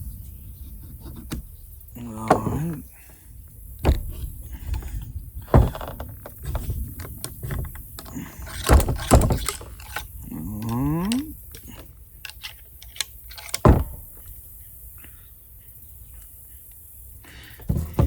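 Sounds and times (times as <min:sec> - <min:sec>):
sharp knocks and scraping: 0:00.6 - 0:02.9, 0:03.8 - 0:14.4, 0:17.6 - 0:18.0.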